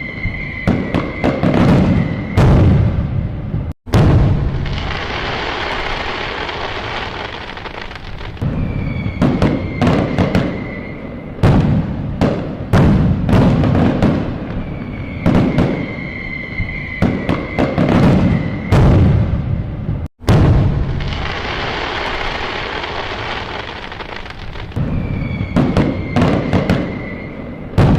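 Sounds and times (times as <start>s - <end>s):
firework bangs and booms: 0.0s - 27.9s
whistling rockets: 0.0s - 27.9s
fireworks crackling: 3.9s - 19.3s, 20.2s - 27.9s.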